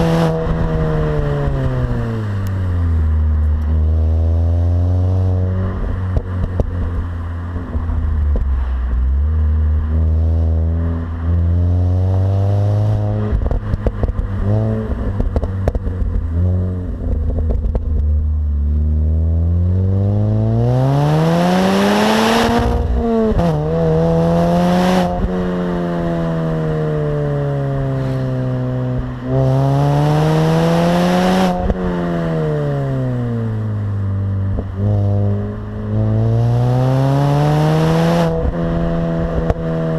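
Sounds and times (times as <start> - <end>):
car engine revving: 0.0 - 39.9
exhaust rattling and crackling: 13.1 - 19.3.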